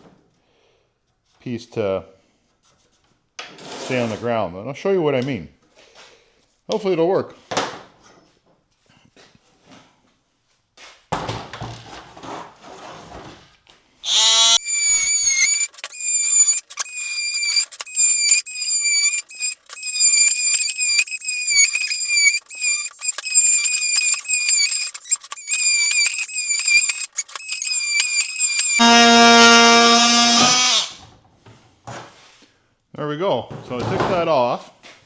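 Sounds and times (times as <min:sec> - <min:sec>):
multi-tool cutting plastic: 0:14.1 - 0:31.0.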